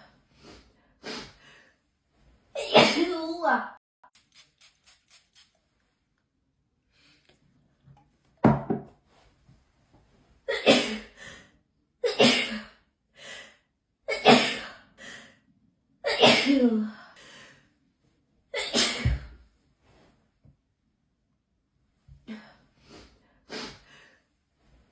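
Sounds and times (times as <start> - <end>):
person sneezing: 18.6 - 19.4.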